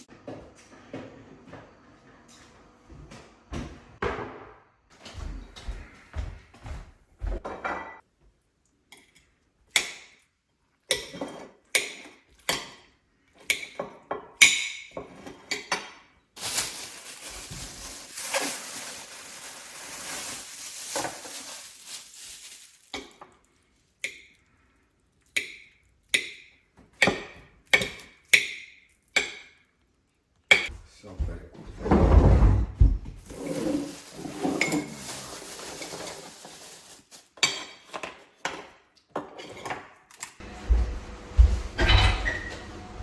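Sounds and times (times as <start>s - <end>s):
dishes and cutlery clinking: 37.4s - 39.9s, 41.8s - 42.7s.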